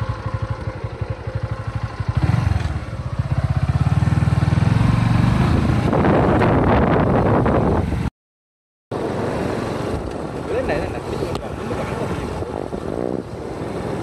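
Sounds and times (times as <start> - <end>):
motorcycle engine running: 0.0 - 7.7.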